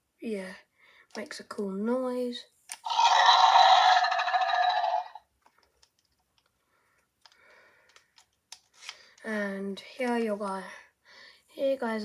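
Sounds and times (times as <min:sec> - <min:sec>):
tinny electronic dinosaur roar: 0:02.8 - 0:05.2.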